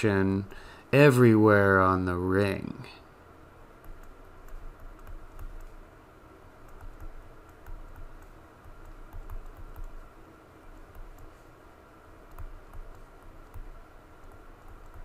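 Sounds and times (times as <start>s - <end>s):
faint irregular clicking and tapping: 3.8s - 5.9s, 6.6s - 11.6s, 12.2s - 15.0s.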